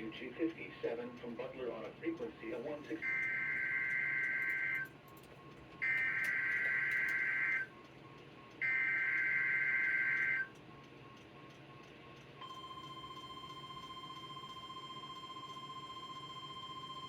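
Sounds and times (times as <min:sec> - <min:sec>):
steady warning alarm tone: 0:02.8 - 0:04.9, 0:05.8 - 0:07.7, 0:08.6 - 0:10.6, 0:12.4 - 0:17.0.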